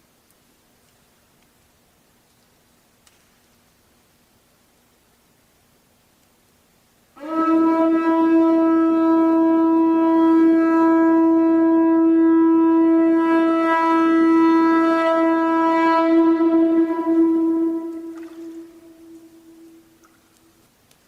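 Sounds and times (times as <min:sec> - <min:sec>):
conch shell trumpet note: 0:07.2 - 0:20.0.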